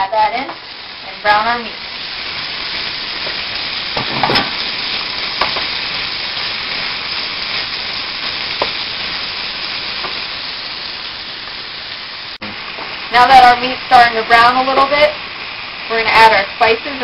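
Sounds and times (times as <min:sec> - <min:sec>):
meat sizzling in a pan: 0:00.0 - 0:17.0.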